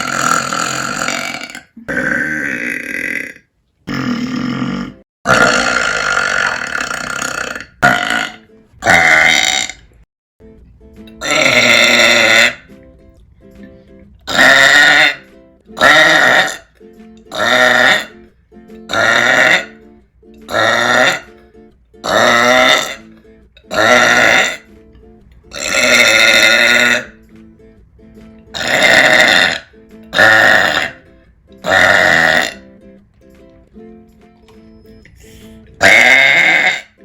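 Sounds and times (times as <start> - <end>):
woman burping loudly: 0.0 - 10.0, 11.2 - 12.7, 14.2 - 16.7, 17.3 - 18.3, 18.9 - 19.8, 20.5 - 21.4, 22.0 - 24.7, 25.5 - 27.2, 28.5 - 32.7, 35.7 - 37.0.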